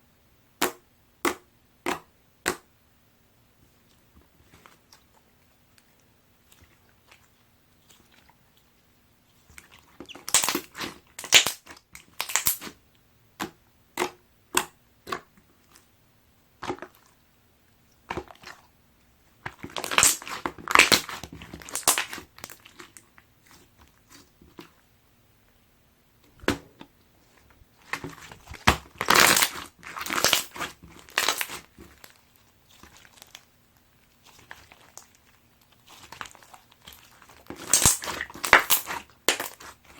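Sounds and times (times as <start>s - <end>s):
slime clicking and popping: 10.1s - 12.7s, 27.9s - 31.6s, 35.8s - 39.8s.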